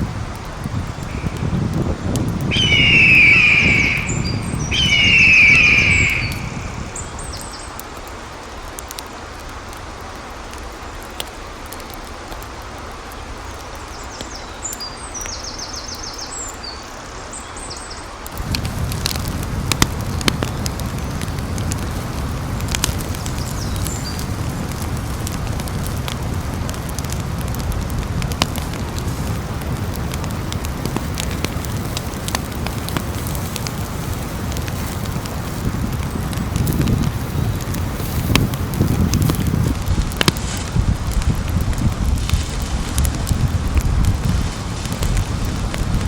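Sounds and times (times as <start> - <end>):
sharp crackles: 0.0 - 16.6, 17.6 - 46.0
bird calling: 1.1 - 1.6, 2.4 - 7.6
high chirps: 2.5 - 7.3.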